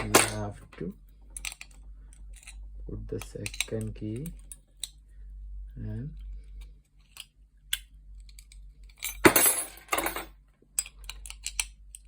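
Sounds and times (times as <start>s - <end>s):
keys jangling and clattering: 8.3s - 11.7s.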